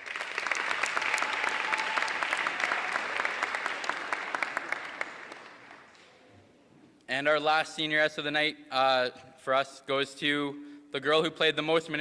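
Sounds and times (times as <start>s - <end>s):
audience applauding: 0.0s - 6.0s.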